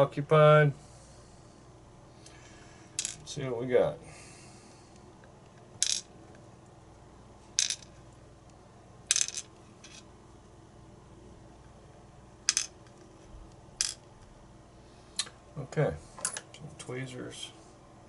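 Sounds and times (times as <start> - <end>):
metal pins clinking onto tray: 3.0 - 3.3, 5.8 - 6.1, 7.6 - 8.0, 9.1 - 10.1, 12.5 - 13.0, 13.8 - 14.0.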